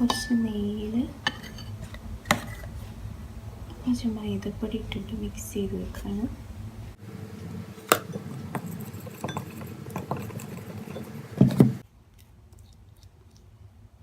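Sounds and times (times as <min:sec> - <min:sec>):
spoon clinking and scraping in bowl: 0:01.2 - 0:02.7, 0:07.9 - 0:11.5.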